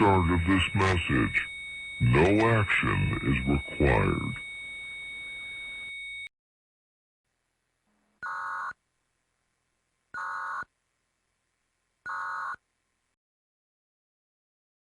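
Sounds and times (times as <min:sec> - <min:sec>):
buzzing digital data tones: 0:00.0 - 0:06.3.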